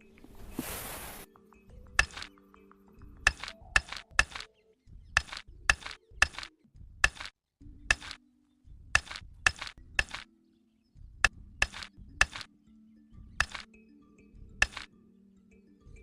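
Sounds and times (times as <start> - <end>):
small hard pieces clicking: 14.6 - 14.9.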